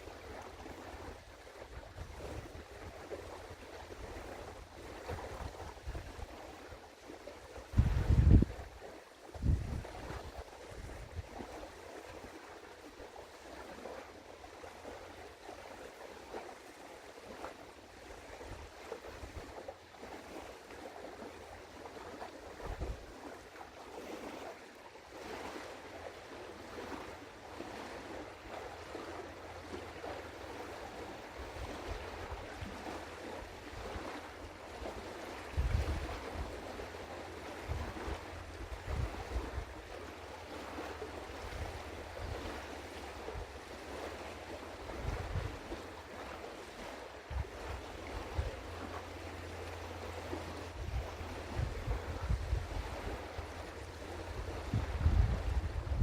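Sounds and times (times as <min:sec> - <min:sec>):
small waves washing: 0:00.0 - 0:56.0
wind buffeting microphone: 0:00.1 - 0:06.6, 0:07.5 - 0:08.7, 0:09.3 - 0:11.6, 0:22.5 - 0:23.2, 0:33.6 - 0:40.6, 0:44.8 - 0:45.8, 0:46.7 - 0:48.9, 0:50.6 - 0:56.0.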